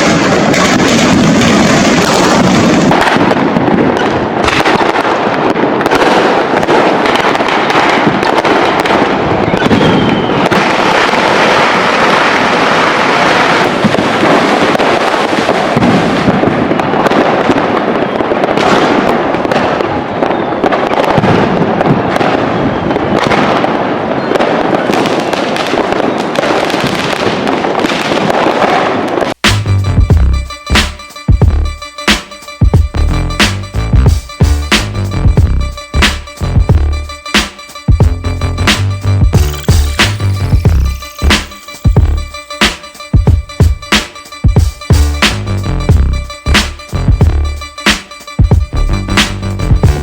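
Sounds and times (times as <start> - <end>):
firecrackers and fireworks bangs: 0.0 - 50.0.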